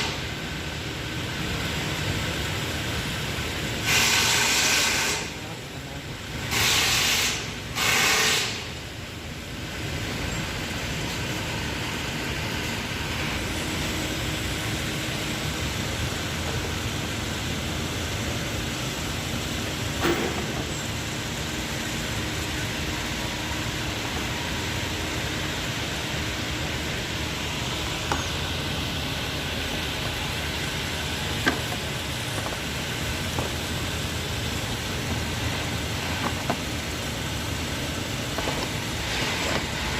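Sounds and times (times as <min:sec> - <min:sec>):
short hissing blasts: 0:03.8 - 0:05.4, 0:06.5 - 0:08.8
car engine idling: 0:08.7 - 0:39.9.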